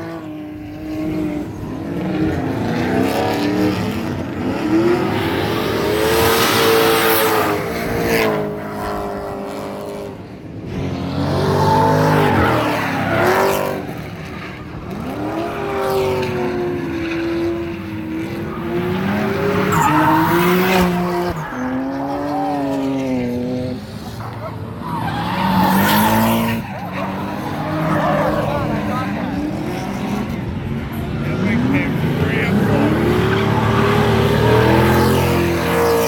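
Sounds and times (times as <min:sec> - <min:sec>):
car engines revving: 0:00.0 - 0:36.0
tires squealing: 0:10.8 - 0:36.0.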